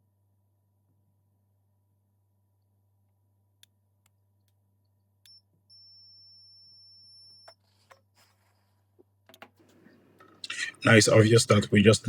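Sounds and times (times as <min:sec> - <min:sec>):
low steady hum: 0:10.2 - 0:12.0.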